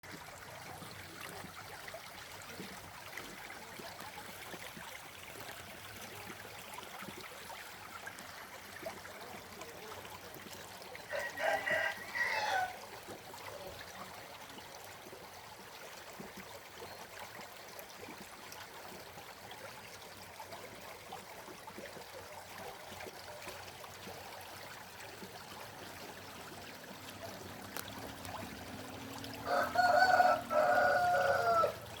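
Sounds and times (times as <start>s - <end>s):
running water trickling: 0.0s - 32.0s
rooster crowing: 11.1s - 12.8s, 29.4s - 31.8s.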